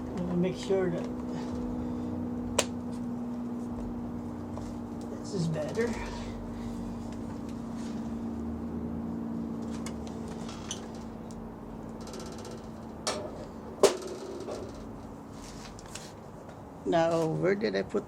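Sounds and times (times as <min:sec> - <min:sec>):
steady low hum: 0:00.0 - 0:18.0
ratcheting rattle: 0:11.9 - 0:13.0.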